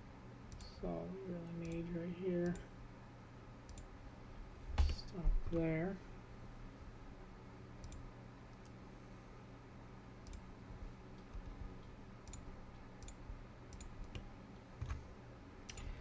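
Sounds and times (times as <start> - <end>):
faint low hum: 0.0 - 16.0
computer mouse clicking: 0.5 - 0.7, 2.4 - 2.6, 3.7 - 3.9, 7.8 - 8.0, 10.2 - 10.5, 11.2 - 15.0, 15.6 - 16.0.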